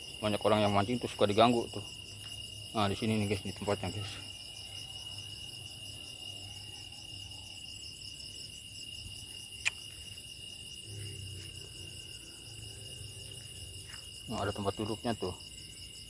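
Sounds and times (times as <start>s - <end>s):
crickets trilling: 0.0s - 16.0s
sharp click: 9.6s - 9.8s.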